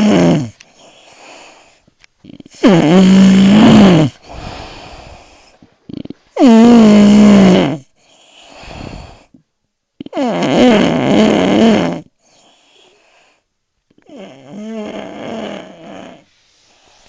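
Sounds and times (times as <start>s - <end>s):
man snoring loudly: 0.0s - 0.6s, 2.6s - 4.8s, 5.9s - 7.9s, 10.2s - 12.1s, 14.1s - 16.2s
soft breathing: 0.5s - 2.6s, 3.2s - 6.5s, 7.9s - 9.5s, 12.2s - 13.6s, 15.4s - 17.0s.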